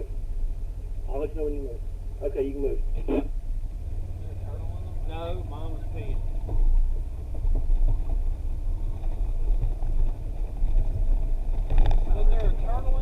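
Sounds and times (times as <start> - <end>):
buggy engine rumbling: 0.0 - 13.0
light knocks and rattles: 6.2 - 12.7.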